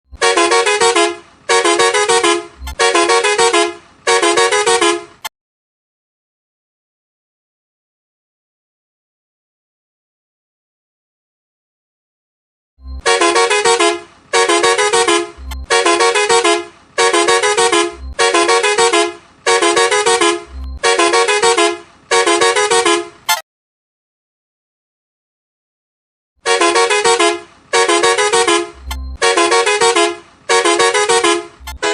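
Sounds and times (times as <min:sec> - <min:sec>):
musical truck horn: 0:00.1 - 0:05.3, 0:12.8 - 0:23.4, 0:26.4 - 0:31.9.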